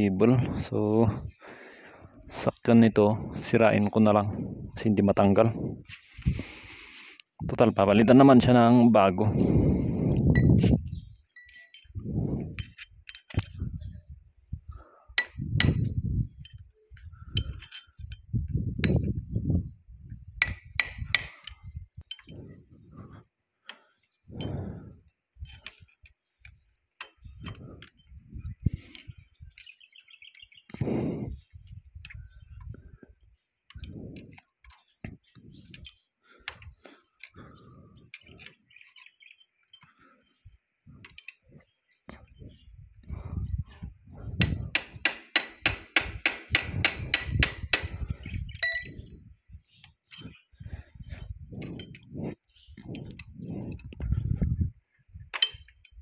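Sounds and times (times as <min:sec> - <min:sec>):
metal tools clanking and knocking: 0:17.3 - 0:18.2, 0:44.4 - 0:48.0, 0:48.6 - 0:49.1, 0:55.3 - 0:55.9
sharp ringing metallic taps: 0:44.4 - 0:48.0, 0:48.6 - 0:49.0.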